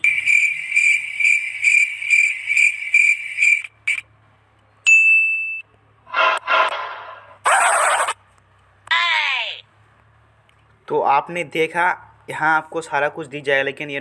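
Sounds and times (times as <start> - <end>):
burst of noise: 6.1 - 8.2
high pulsing chirping: 6.1 - 8.2.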